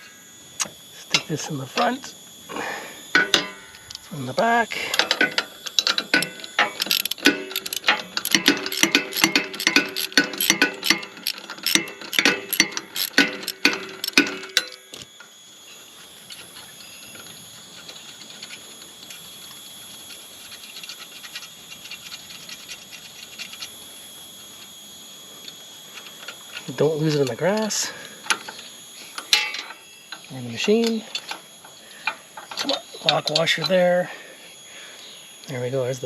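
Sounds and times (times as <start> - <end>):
ratchet wrench clicking: 4.8 - 15.1, 16.3 - 23.7.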